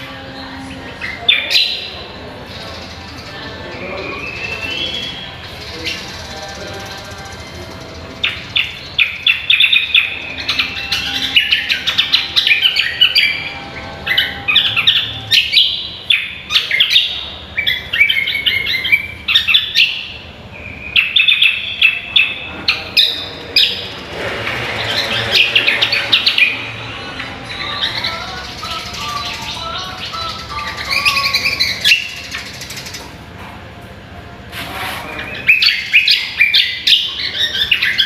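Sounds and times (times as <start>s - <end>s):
bird singing whistles and trills: 2.7s - 23.8s, 27.4s - 33.1s, 35.3s - 38.0s.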